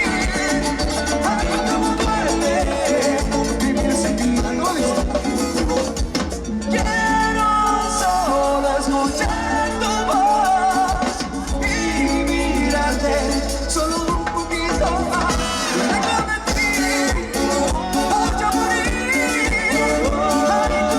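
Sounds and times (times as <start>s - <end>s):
latin dance band playing live: 0.0s - 20.9s.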